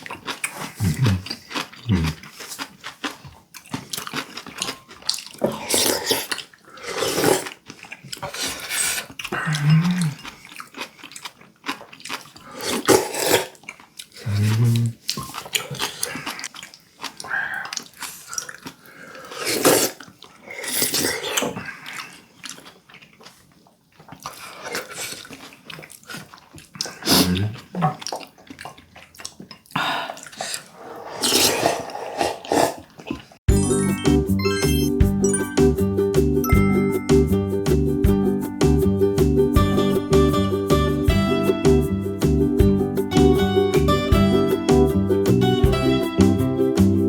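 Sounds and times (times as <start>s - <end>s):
wet slurping and chewing: 0.0s - 35.4s.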